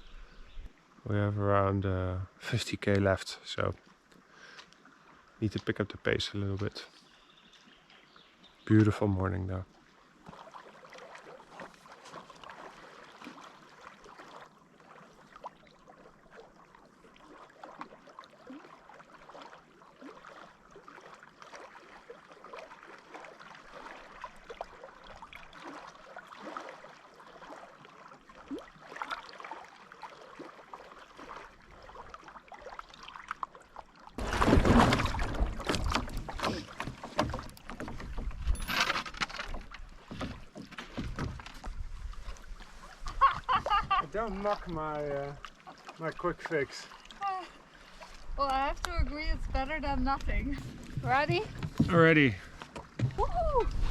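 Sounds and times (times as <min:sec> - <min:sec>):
water dripping and lapping: 0:02.6 - 0:53.9
paddle strokes in water: 0:09.7 - 0:53.9
wind buffeting microphone: 0:48.3 - 0:51.9, 0:53.0 - 0:53.9.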